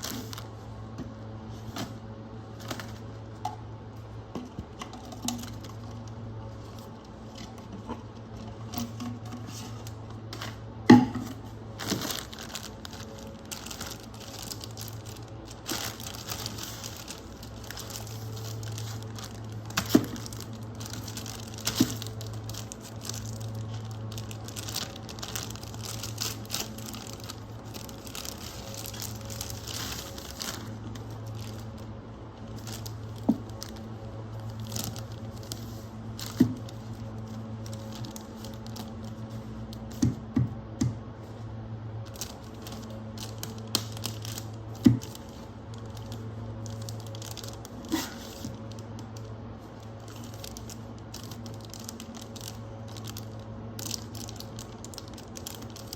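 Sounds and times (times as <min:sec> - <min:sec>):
plastic packaging crinkling and tearing: 0:00.0 - 0:40.2, 0:41.2 - 0:55.9.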